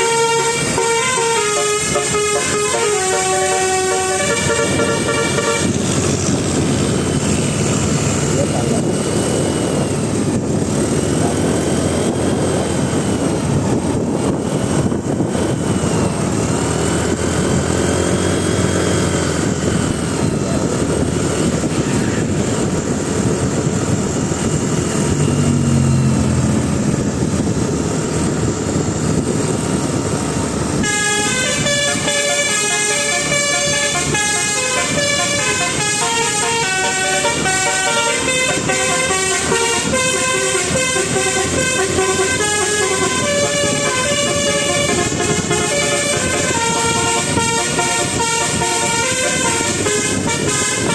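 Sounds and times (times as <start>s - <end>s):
musical horn melody: 0.0s - 6.3s, 30.8s - 50.9s
rising and falling horn tones: 0.0s - 6.6s, 30.8s - 50.9s
bus engine: 0.0s - 50.9s
road noise: 0.0s - 50.9s.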